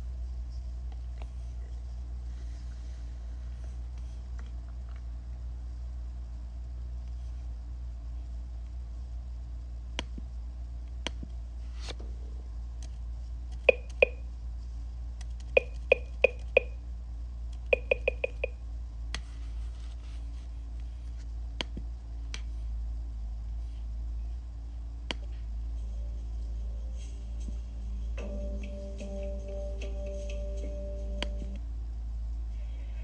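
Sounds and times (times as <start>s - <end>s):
steady low hum: 0.0s - 33.0s
scattered clicks: 12.8s - 14.2s, 15.2s - 16.7s
sharp pitched taps: 13.7s - 14.2s, 15.5s - 16.7s, 17.6s - 18.6s.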